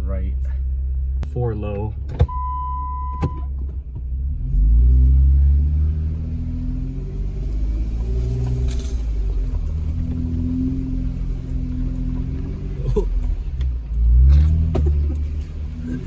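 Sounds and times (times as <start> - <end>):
engine pulling at low speed: 0.0 - 16.0.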